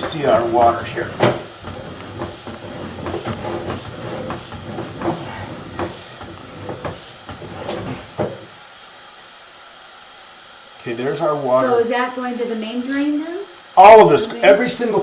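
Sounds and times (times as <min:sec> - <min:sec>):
cable knocking and rattling in pipe: 0:00.0 - 0:08.6
steady hiss: 0:00.0 - 0:15.0.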